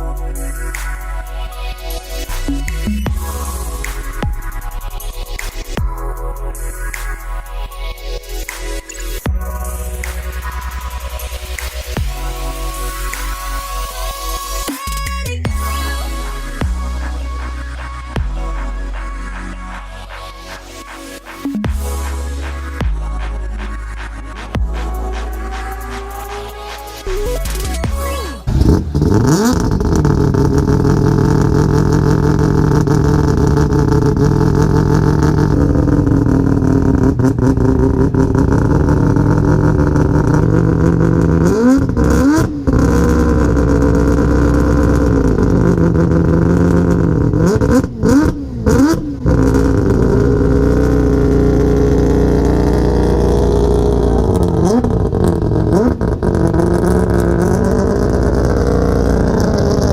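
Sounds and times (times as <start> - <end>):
car engine running: 0.0 - 6.2, 9.2 - 59.9
gear changes: 8.3 - 59.9.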